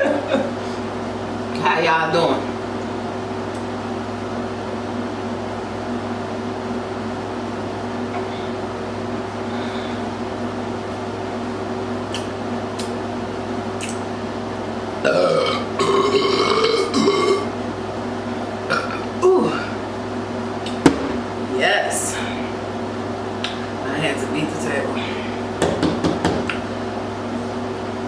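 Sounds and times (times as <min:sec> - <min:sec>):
steady low hum: 0:00.0 - 0:28.0
long loud burp: 0:15.0 - 0:17.5, 0:18.7 - 0:19.4.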